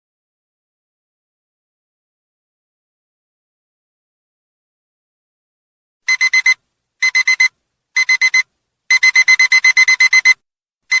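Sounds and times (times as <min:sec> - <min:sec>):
digital alarm beeping: 0:06.1 - 0:11.0.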